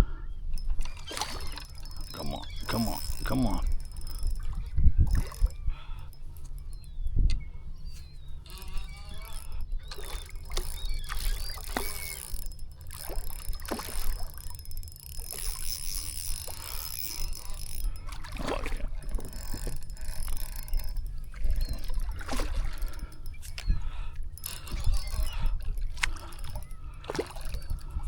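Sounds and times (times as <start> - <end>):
wind rumble on microphone: 0.0 - 12.4, 16.4 - 28.0
water splashing around a kayak: 9.8 - 14.4, 18.0 - 28.0.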